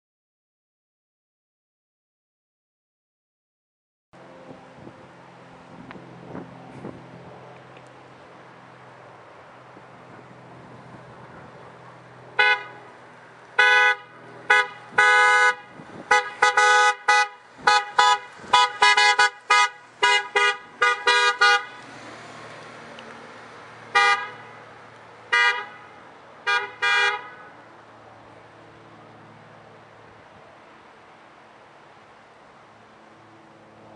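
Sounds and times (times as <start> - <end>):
locomotive air horn blasts: 12.3 - 12.9, 13.6 - 21.8, 23.9 - 24.6, 25.3 - 27.6.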